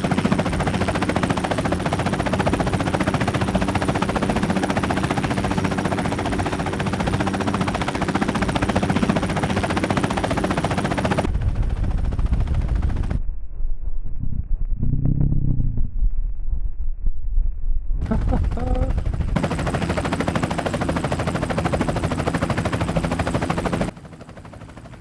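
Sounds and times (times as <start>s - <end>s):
wind rush over microphone: 11.2s - 19.4s
motorcycle engine running: 18.0s - 20.0s.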